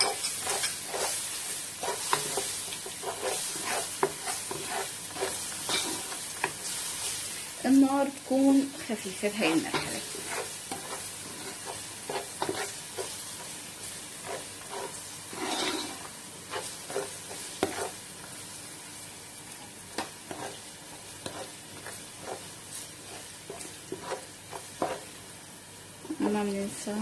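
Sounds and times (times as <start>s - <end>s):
spoon scraping and knocking a pan: 0.0s - 6.8s, 9.4s - 18.0s, 19.9s - 25.1s
vegetables sizzling in oil: 0.0s - 27.0s.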